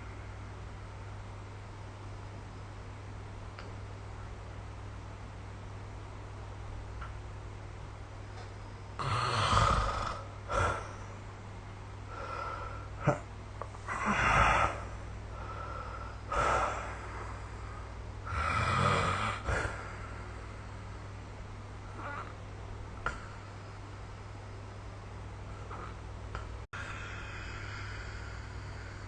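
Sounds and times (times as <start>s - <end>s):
steady low hum: 0.0s - 29.0s
person snoring: 9.0s - 11.0s, 18.3s - 20.1s.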